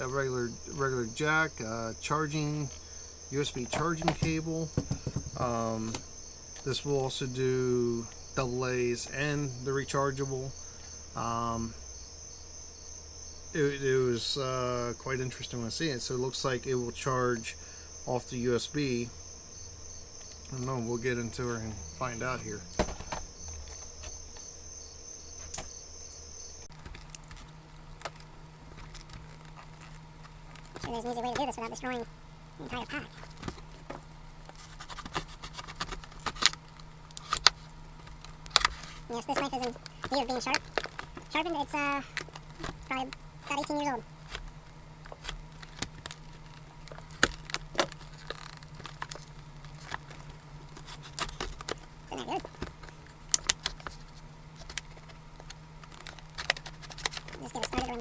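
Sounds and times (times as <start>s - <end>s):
plastic blister pack rustling: 32.6s - 58.0s
plastic snapping: 33.2s - 41.3s, 44.2s - 57.9s.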